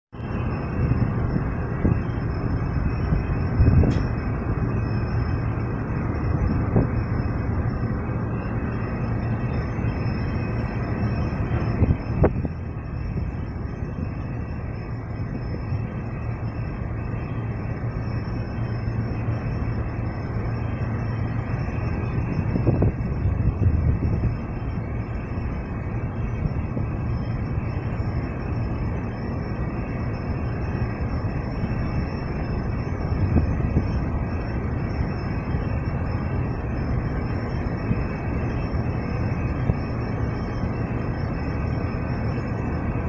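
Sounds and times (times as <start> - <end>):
ship engine rumbling: 0.2 - 43.0.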